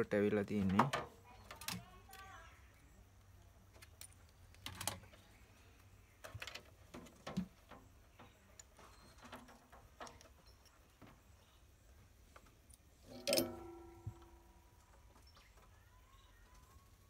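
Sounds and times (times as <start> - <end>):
faint low hum: 0.0 - 17.0
small tools clicking and tapping: 0.6 - 2.4, 12.3 - 16.9.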